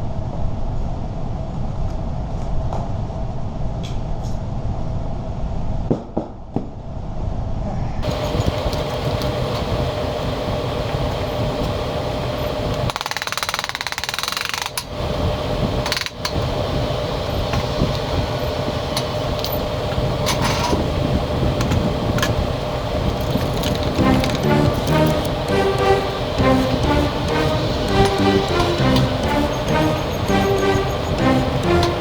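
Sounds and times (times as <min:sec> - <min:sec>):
music: 0:23.5 - 0:32.0.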